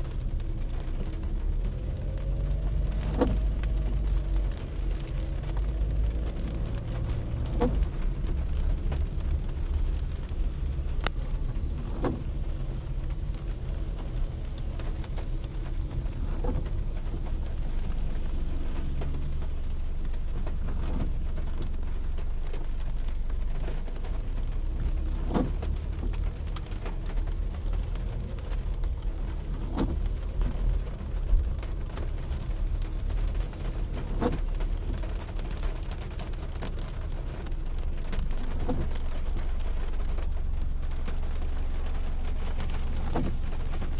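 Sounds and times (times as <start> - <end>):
rain: 0.0 - 43.9.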